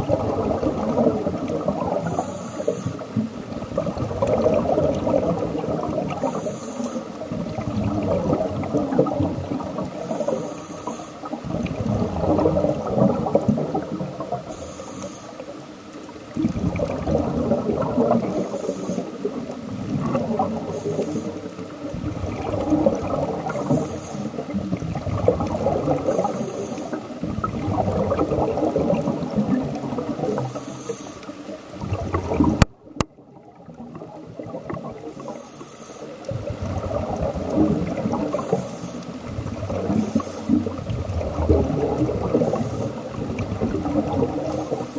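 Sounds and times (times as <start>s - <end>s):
exhaled air bubbling: 0.0s - 44.9s
regulator inhale hiss: 2.0s - 3.2s, 6.2s - 7.3s, 10.0s - 11.4s, 14.4s - 15.7s, 18.2s - 19.4s, 20.6s - 21.7s, 23.4s - 24.5s, 26.0s - 27.2s, 30.2s - 31.6s, 35.2s - 36.4s, 38.3s - 40.8s, 42.2s - 43.2s, 44.4s - 44.9s.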